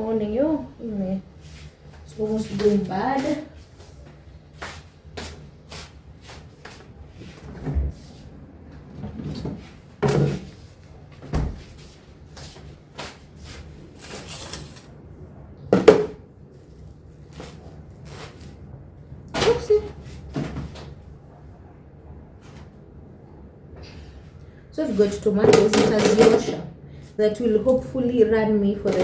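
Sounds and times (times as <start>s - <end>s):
bag rustling: 13.9s - 14.9s
groceries knocking and clicking: 25.4s - 26.5s.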